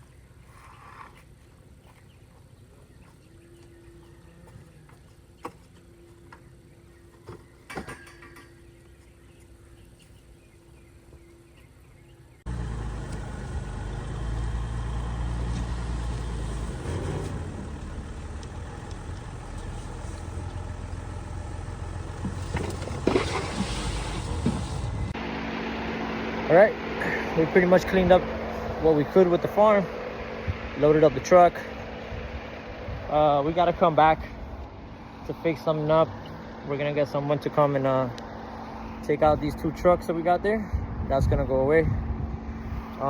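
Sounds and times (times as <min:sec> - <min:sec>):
pickup truck engine rumble: 0:12.5 - 0:43.0.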